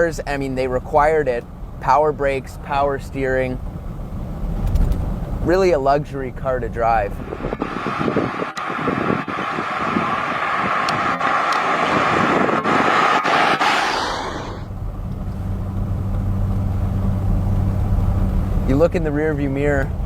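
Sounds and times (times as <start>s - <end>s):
wind and road noise: 0.0s - 20.0s
low engine drone: 4.7s - 18.8s.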